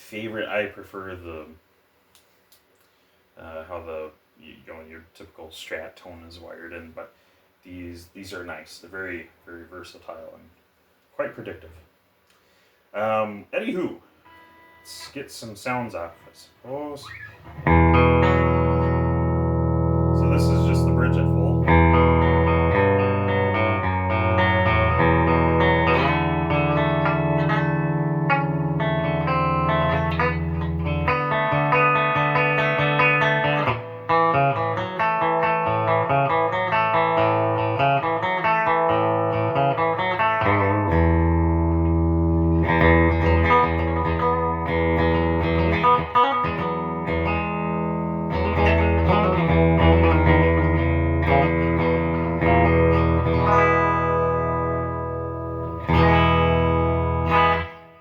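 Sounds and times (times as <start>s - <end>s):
amplified electric guitar: 17.0s - 58.0s.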